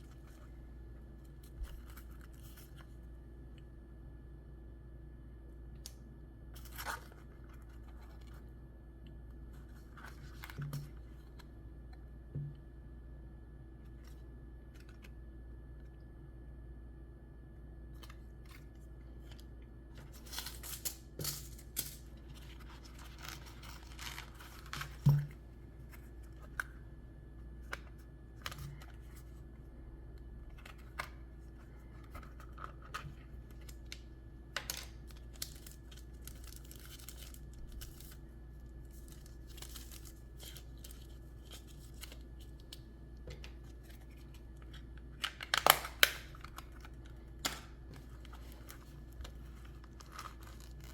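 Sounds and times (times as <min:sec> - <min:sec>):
packaging crinkling: 0:35.0 - 0:42.8, 0:43.7 - 0:50.9
packaging rustling: 0:47.9 - 0:50.9.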